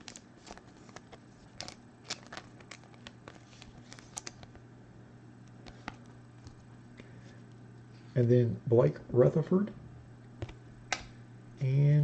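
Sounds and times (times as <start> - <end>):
low steady hum: 0.0 - 12.0
cards clicking and tapping: 5.6 - 6.6.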